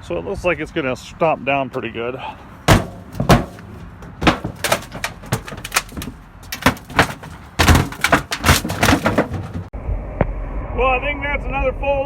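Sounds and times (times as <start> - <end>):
sheet metal crunching underfoot: 2.5 - 9.7.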